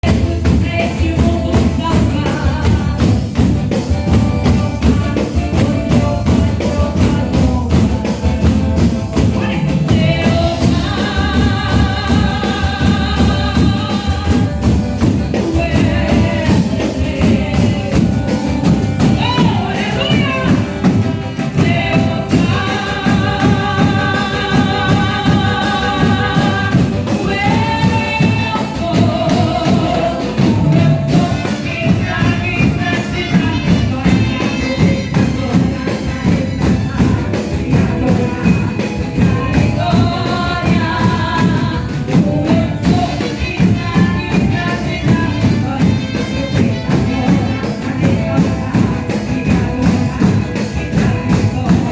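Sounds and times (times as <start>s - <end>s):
gospel band with singing: 0.0s - 51.9s.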